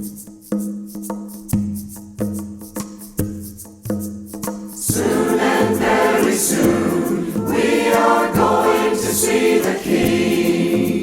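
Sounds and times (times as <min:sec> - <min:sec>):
percussion ticking a beat: 0:00.0 - 0:11.0
choir singing gospel: 0:04.8 - 0:11.0.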